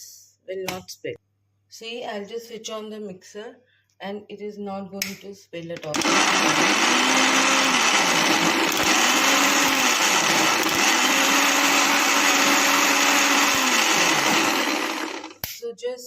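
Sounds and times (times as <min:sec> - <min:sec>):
mixer grinder motor whirring: 0:06.0 - 0:15.5.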